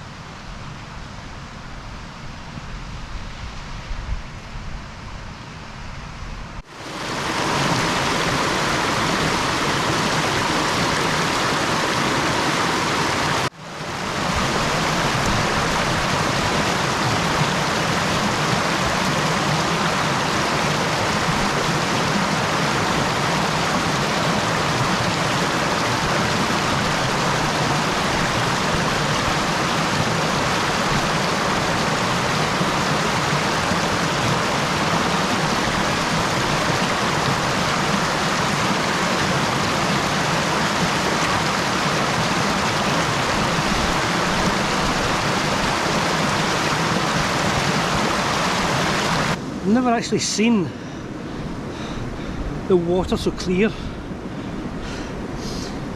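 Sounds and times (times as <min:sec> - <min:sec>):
mountain stream flowing: 0:06.6 - 0:55.9.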